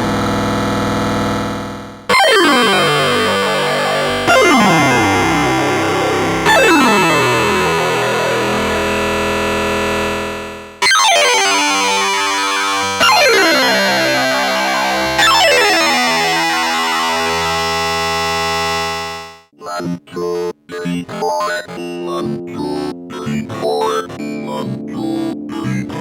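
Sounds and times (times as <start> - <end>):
short choppy synth notes: 2.1 - 8.8
synthesizer chords: 2.1 - 19.4.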